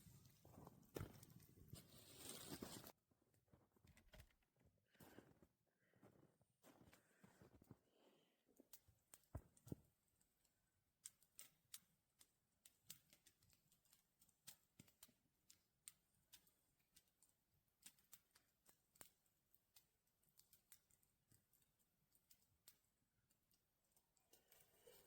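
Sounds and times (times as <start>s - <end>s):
faint irregular clicks: 8.6s - 25.0s.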